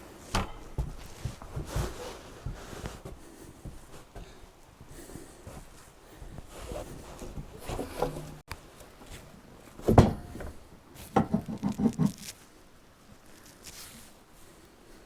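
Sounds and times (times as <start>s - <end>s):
wooden boards knocking and thumping: 0.3s - 1.0s, 9.8s - 10.6s.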